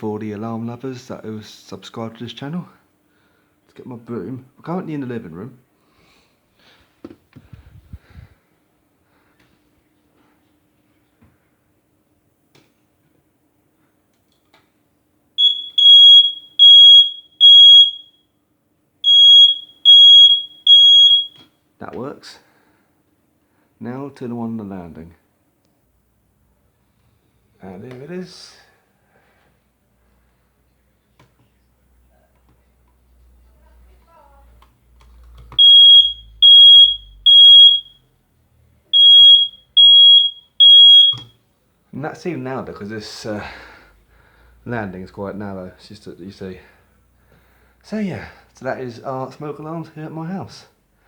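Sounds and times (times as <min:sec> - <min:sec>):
smoke alarm beeping: 0:15.4 - 0:18.4, 0:19.0 - 0:21.5, 0:35.5 - 0:38.1, 0:38.9 - 0:41.4.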